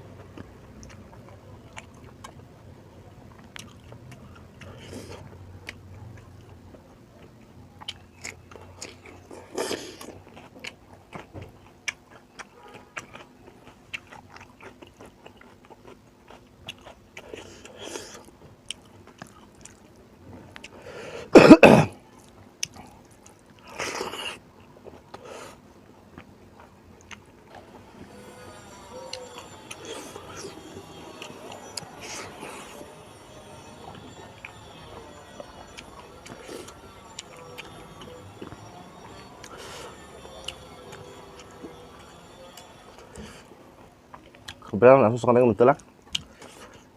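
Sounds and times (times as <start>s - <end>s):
chewing with wet mouth clicks: 3.3s - 4.8s, 7.2s - 20.8s, 22.2s - 24.2s, 46.0s - 46.6s
throat clearing: 21.3s - 22.0s.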